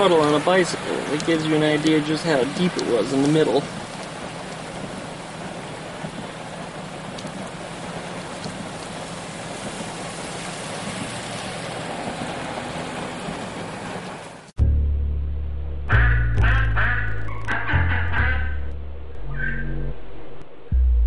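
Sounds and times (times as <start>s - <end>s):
heavy rain falling: 0.0s - 14.5s.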